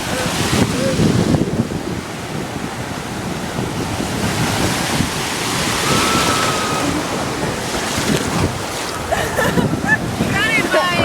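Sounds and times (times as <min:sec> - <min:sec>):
ocean surf washing onto beach: 0:00.0 - 0:11.0
wind buffeting microphone: 0:00.0 - 0:11.0.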